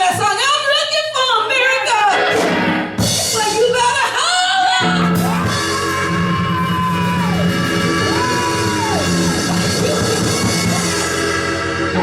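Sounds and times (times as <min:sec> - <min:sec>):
person hollering long tones: 0:04.8 - 0:10.4
church organ chords: 0:05.6 - 0:12.0.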